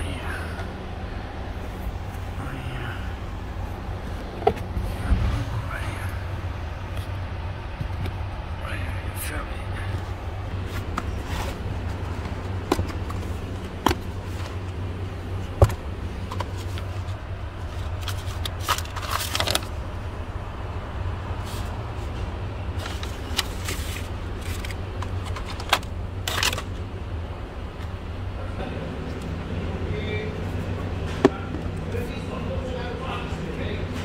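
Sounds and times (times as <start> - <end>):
steady low hum: 0.0 - 34.0
rustling and scraping: 9.9 - 19.8, 21.4 - 26.8.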